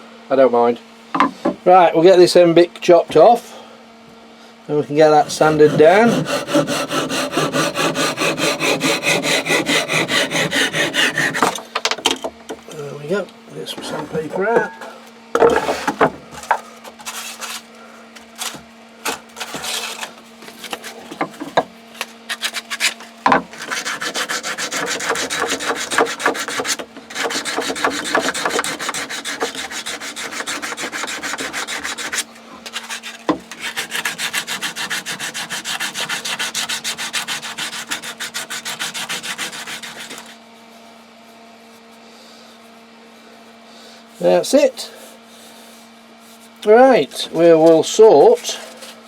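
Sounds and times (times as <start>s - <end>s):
sandpaper rubbing on wood: 5.0s - 11.5s, 23.6s - 40.4s.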